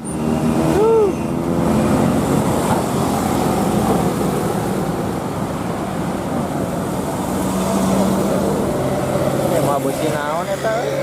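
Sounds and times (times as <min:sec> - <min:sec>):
bus engine rumbling: 0:00.0 - 0:11.0
roadside traffic noise: 0:00.0 - 0:11.0.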